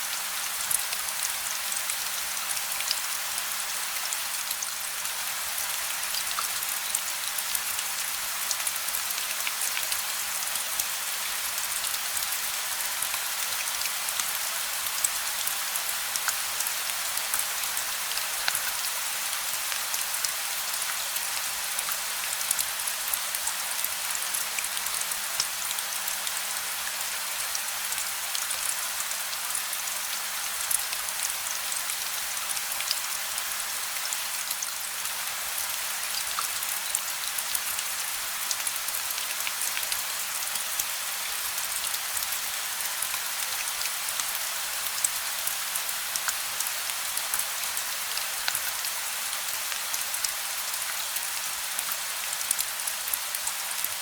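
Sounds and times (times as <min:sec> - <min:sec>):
gentle rain falling: 0:00.0 - 0:54.0.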